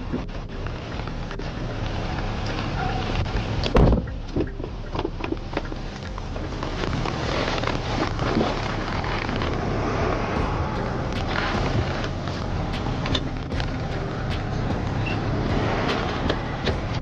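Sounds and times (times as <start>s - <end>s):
road traffic rumble: 0.0s - 17.0s
thumps and knocks on car: 3.4s - 4.5s.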